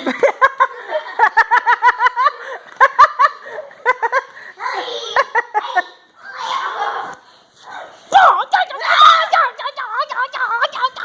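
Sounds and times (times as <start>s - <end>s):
child laughing: 0.0s - 6.9s.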